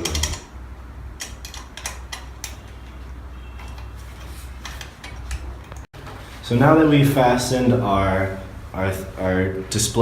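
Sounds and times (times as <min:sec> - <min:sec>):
tool clicking on metal screws: 0:00.0 - 0:00.5, 0:01.2 - 0:02.7.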